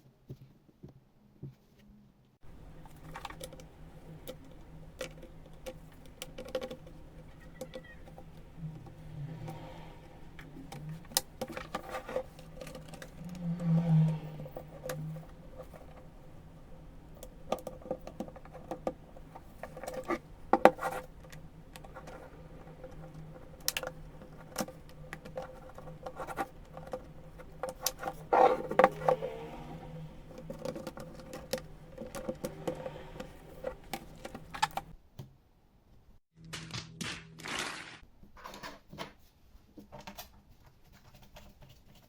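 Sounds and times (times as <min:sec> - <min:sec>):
plastic and metal parts clicking: 0:02.5 - 0:09.6, 0:10.2 - 0:29.2, 0:30.3 - 0:35.0.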